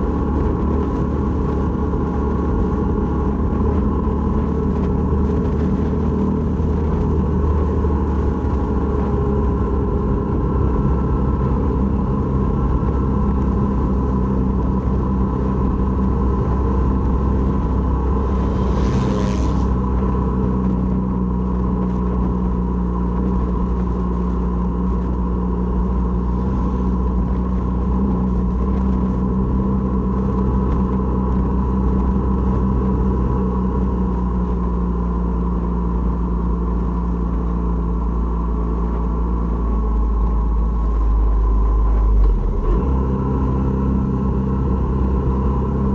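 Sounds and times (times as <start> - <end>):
motorcycle engine running: 0.0 - 45.9
brief hiss: 18.4 - 19.8.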